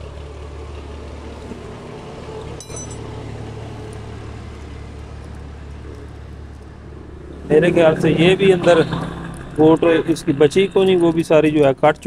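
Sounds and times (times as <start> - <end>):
low background hum: 0.0 - 12.0
metallic click with ring: 2.6 - 3.1.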